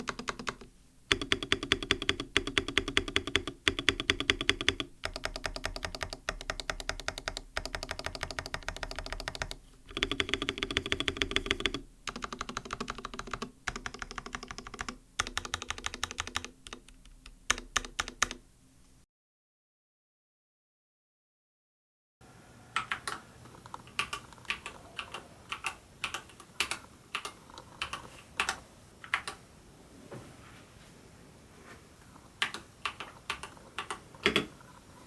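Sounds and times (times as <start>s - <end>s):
keyboard keys pressed rapidly: 0.0s - 18.6s, 23.8s - 29.4s, 32.4s - 34.5s.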